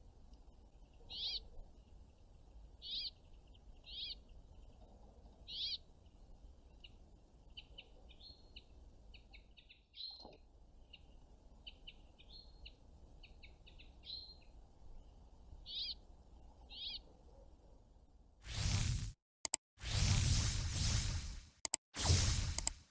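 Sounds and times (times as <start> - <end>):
songbirds chirping: 0.0 - 17.6
loud rushing noise: 22.0 - 22.8.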